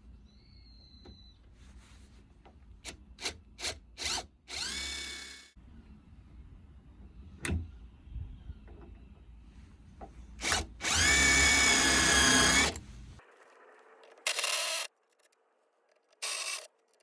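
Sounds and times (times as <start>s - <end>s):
electric drill motor whine: 4.0s - 5.5s, 10.4s - 12.8s, 14.3s - 14.9s, 16.2s - 16.7s.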